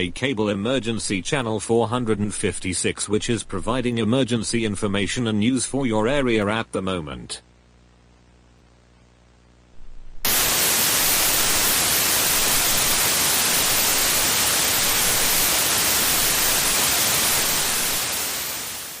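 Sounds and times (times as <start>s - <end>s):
faint low hum: 0.0s - 10.3s
television static hiss: 0.0s - 19.0s.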